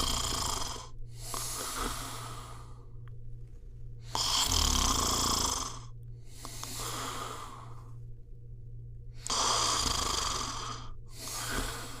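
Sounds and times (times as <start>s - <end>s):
dog snoring: 0.0s - 2.8s, 4.0s - 7.9s, 9.2s - 12.0s.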